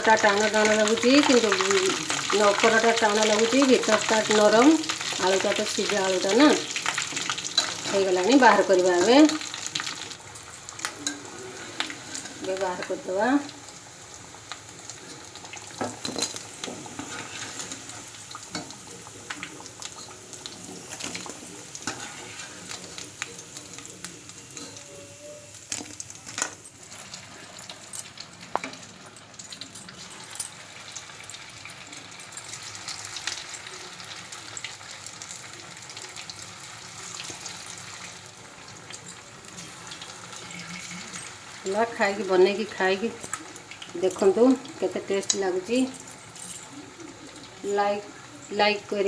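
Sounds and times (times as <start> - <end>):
deep-frying sizzle: 0.0 - 49.0.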